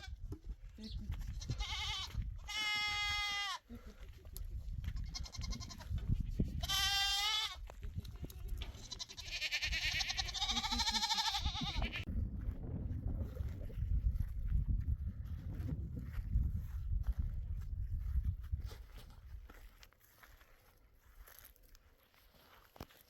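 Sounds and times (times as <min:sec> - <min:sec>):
animal bleating: 0:01.2 - 0:03.9, 0:04.8 - 0:05.9, 0:06.6 - 0:07.6, 0:08.5 - 0:12.1
steady low rumble: 0:10.3 - 0:19.4.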